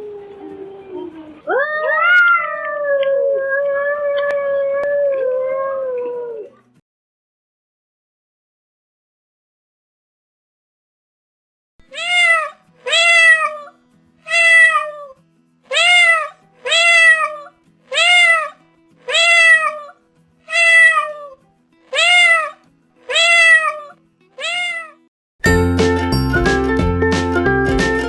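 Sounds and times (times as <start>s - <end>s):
cat meowing: 1.5s - 6.5s, 11.9s - 13.7s, 14.3s - 15.1s, 15.7s - 25.1s.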